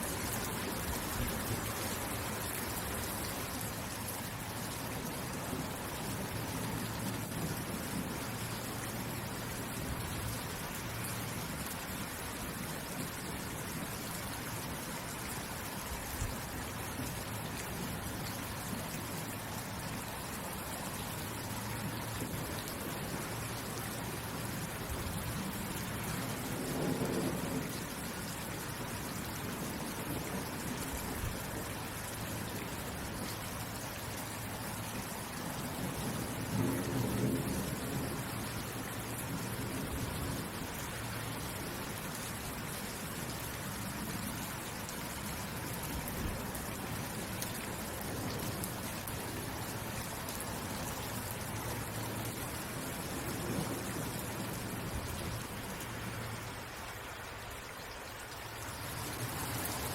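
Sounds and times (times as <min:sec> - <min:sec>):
heavy rain falling: 0:00.0 - 0:59.9
thunder rumbling: 0:24.9 - 0:28.4.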